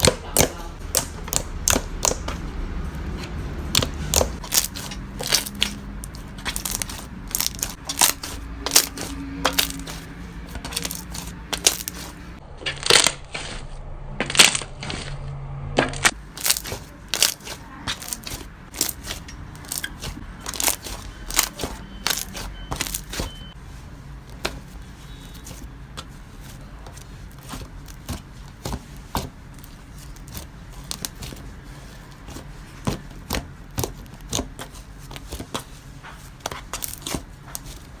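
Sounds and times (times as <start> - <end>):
slime clicking and popping: 0.0 - 2.4.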